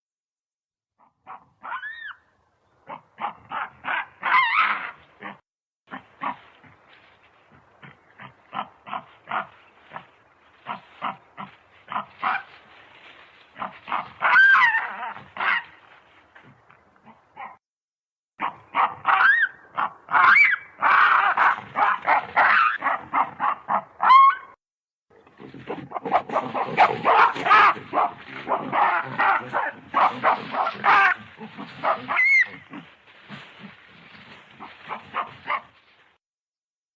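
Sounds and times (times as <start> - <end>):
baboons squealing: 1.0 - 2.2, 13.6 - 15.8, 18.8 - 24.6, 25.4 - 35.6
baboons grunting and barking: 2.8 - 12.8, 13.4 - 17.6, 18.4 - 24.3, 25.1 - 35.8.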